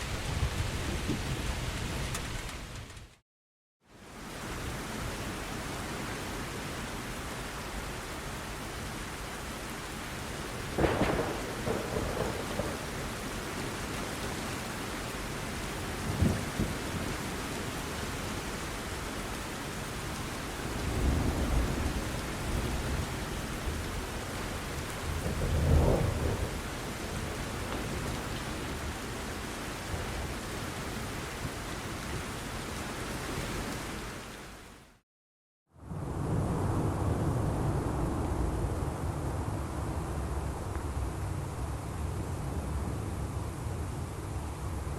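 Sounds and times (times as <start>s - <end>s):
heavy rain falling: 4.0s - 35.0s
thunder rumbling: 10.6s - 13.4s, 20.6s - 28.9s, 35.8s - 44.9s.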